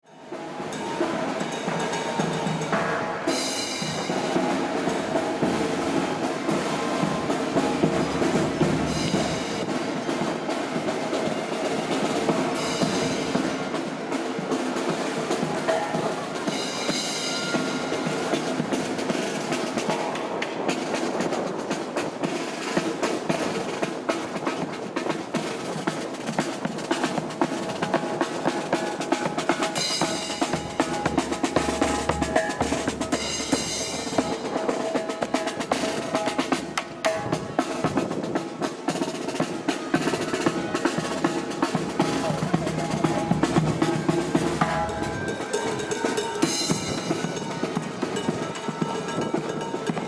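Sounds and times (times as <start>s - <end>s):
snare drum rolls: 0.1s - 50.0s
brass band music: 39.4s - 49.7s.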